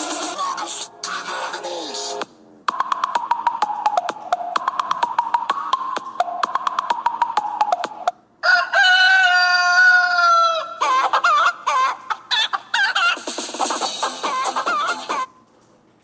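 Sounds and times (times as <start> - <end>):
ringtone rhythmic taps over tone: 2.7 - 8.2
rooster crowing: 8.4 - 10.8
hen clucks: 10.8 - 15.3.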